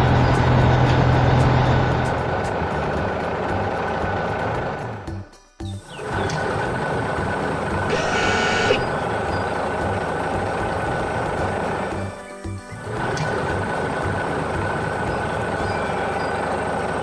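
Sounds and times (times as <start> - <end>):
heavy vehicle engine running: 5.9 - 12.1, 12.8 - 17.0
short high-pitched tone: 7.9 - 9.0.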